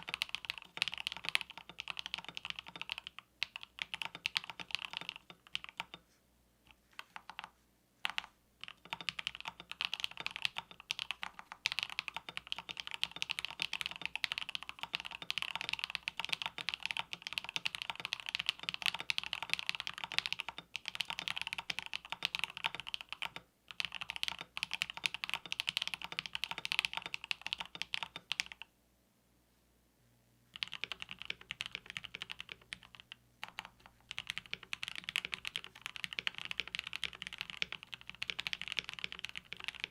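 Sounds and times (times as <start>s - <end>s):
typing on mechanical keyboard: 0.0s - 6.0s, 7.0s - 28.7s, 30.5s - 39.9s.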